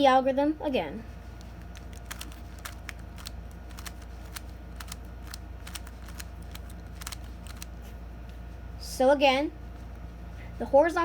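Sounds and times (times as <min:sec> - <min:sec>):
steady low hum: 0:00.0 - 0:11.0
puzzle cube clicking: 0:01.7 - 0:07.7.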